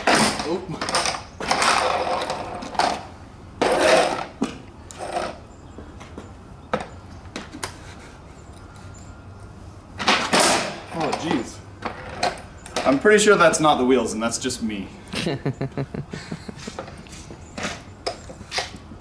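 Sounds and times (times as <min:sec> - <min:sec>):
skateboard rolling on pavement: 0:00.0 - 0:07.6, 0:09.9 - 0:13.2.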